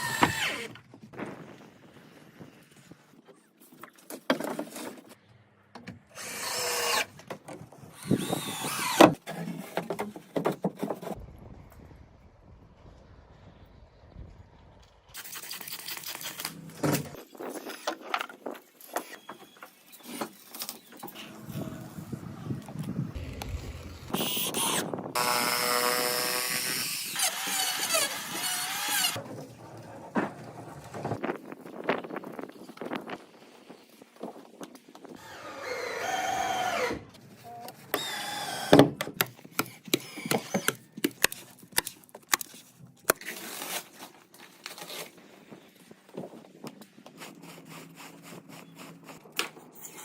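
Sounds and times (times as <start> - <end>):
power tool whining: 8.0 - 9.2, 21.2 - 29.2.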